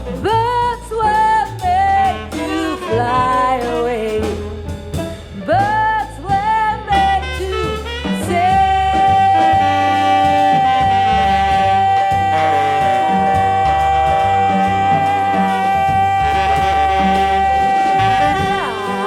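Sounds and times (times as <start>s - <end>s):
jazz band playing live: 0.0s - 19.0s
tenor saxophone: 0.0s - 19.0s
person singing: 8.3s - 19.0s.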